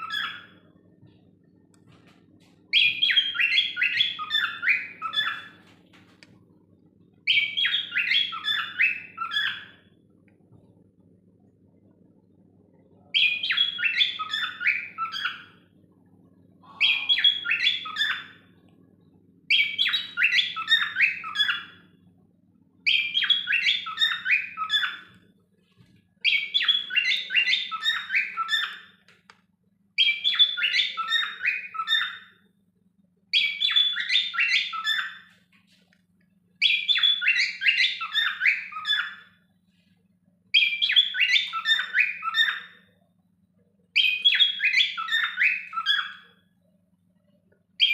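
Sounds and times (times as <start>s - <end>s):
cockatiels warbling and chirping: 0.0s - 0.7s, 2.7s - 6.2s, 7.3s - 9.8s, 13.2s - 15.6s, 16.6s - 18.6s, 19.5s - 21.9s, 22.9s - 25.2s, 26.2s - 29.1s, 30.0s - 32.4s, 33.3s - 35.4s, 36.6s - 39.4s, 40.5s - 42.9s, 44.0s - 46.4s.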